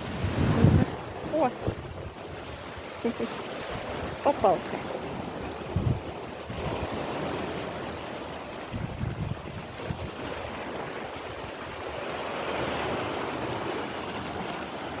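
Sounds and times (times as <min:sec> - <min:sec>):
wind thumps on microphone: 0:00.0 - 0:02.8, 0:05.1 - 0:07.6, 0:08.7 - 0:11.9
sea waves washing on shore: 0:00.0 - 0:15.0.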